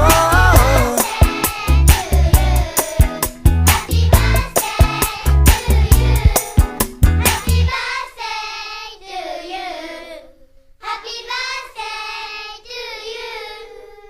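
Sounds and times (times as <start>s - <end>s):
high voice singing alone: 0.0s - 2.6s
beat-heavy song: 0.0s - 7.7s.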